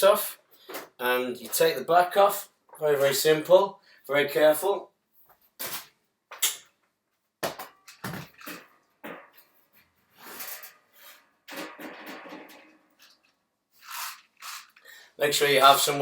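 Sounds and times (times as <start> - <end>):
panel scraping: 10.1 - 13.2.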